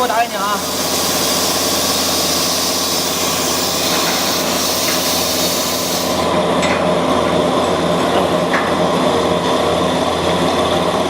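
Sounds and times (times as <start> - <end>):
plasma cutter hissing: 0.0 - 6.4.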